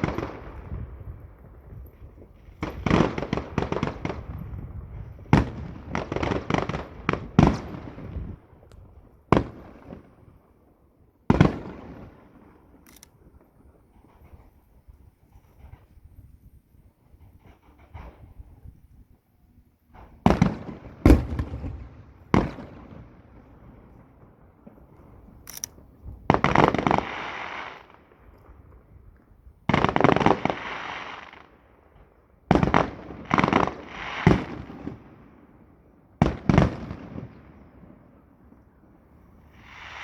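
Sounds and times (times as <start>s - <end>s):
crackling firework bursts: 0.0s - 8.7s, 19.9s - 28.8s, 29.7s - 31.9s, 32.5s - 38.2s, 39.3s - 40.0s
firework bangs: 0.0s - 8.7s, 19.9s - 28.8s, 29.7s - 31.6s, 32.5s - 35.6s, 36.2s - 38.1s, 39.4s - 40.0s.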